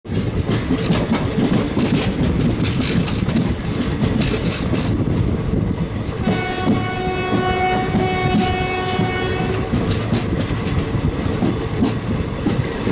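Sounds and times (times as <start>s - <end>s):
train wheels clattering on rails: 0.1s - 12.9s
locomotive horn blast: 6.2s - 9.9s.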